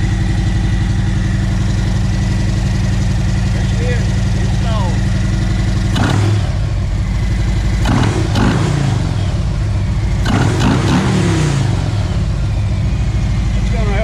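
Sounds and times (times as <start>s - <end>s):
motorcycle engine idling and revving: 0.0s - 14.0s.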